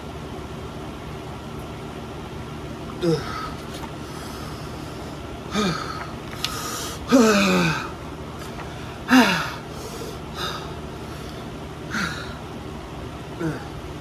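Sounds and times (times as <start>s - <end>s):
person groaning: 3.0s - 3.6s, 5.5s - 6.0s, 7.1s - 7.9s, 9.1s - 9.6s, 11.9s - 12.4s, 13.4s - 13.8s
person gasping: 3.0s - 4.8s, 5.5s - 8.0s, 8.9s - 10.8s, 11.9s - 12.4s, 13.4s - 13.8s.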